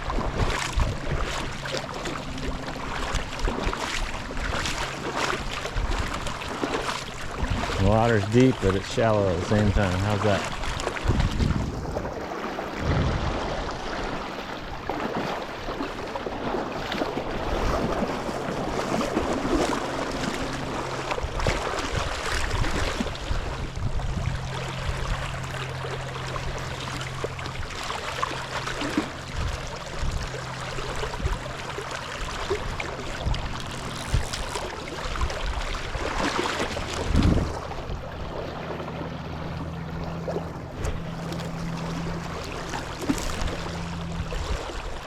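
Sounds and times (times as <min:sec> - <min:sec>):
river water rushing: 0:17.0 - 0:23.4, 0:24.4 - 0:45.0.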